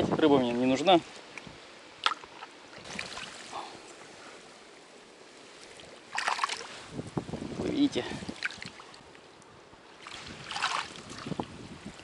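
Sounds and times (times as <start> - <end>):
water sloshing: 1.9 - 7.1, 8.2 - 12.0
fish splashing into water: 2.0 - 3.6, 6.1 - 6.8, 10.0 - 11.4.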